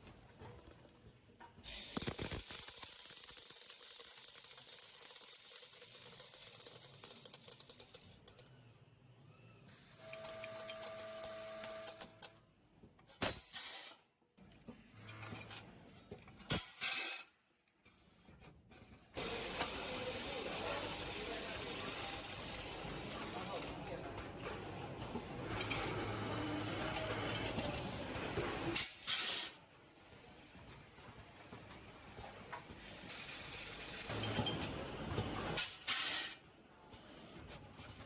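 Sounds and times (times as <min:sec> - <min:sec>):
machine whirring: 0:19.2 - 0:28.8.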